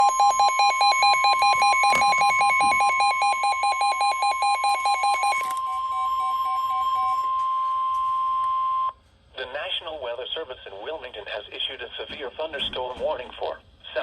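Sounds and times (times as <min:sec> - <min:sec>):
loud steady alarm tone: 0:00.0 - 0:08.9
rapidly pulsing beep: 0:00.0 - 0:08.9.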